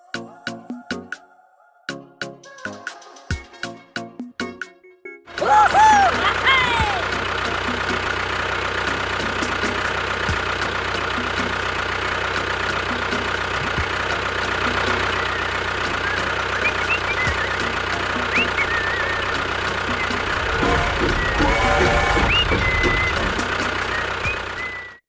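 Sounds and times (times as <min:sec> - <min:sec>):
small motor running: 0:06.2 - 0:24.9.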